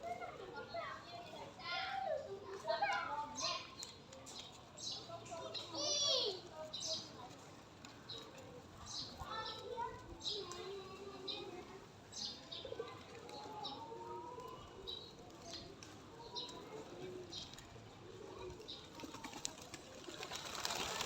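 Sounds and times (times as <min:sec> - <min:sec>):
pigeon wings flapping: 0:18.8 - 0:21.0.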